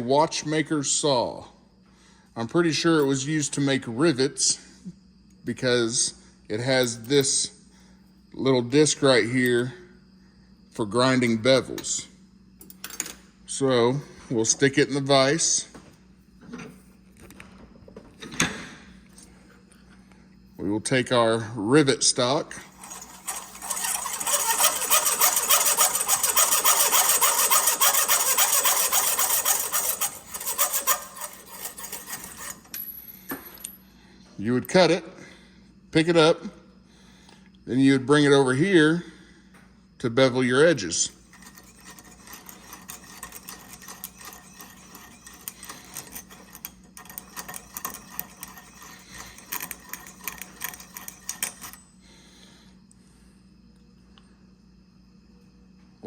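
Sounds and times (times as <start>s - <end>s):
saw rasping through metal: 22.6s - 32.8s, 41.0s - 52.0s.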